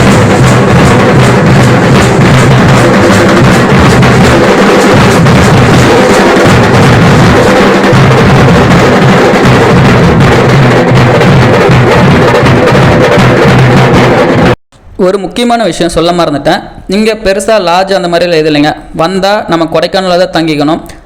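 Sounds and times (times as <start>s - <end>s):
loud drum-led music: 0.0s - 15.2s.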